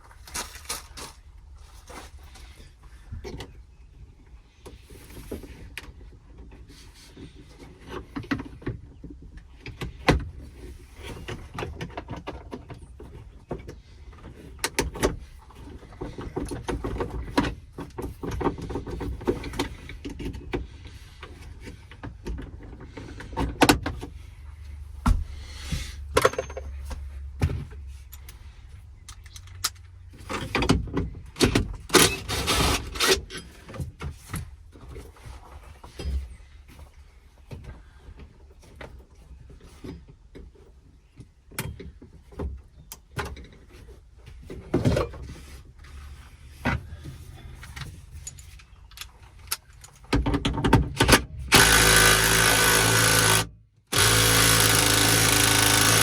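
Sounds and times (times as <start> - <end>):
hand tools clicking and knocking: 48.2 - 56.0.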